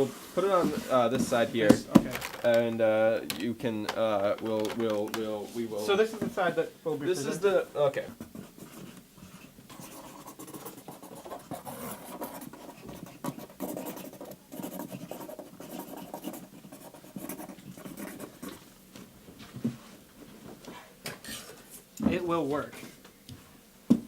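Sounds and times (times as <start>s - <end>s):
coloring utensil scratching: 8.4s - 18.6s.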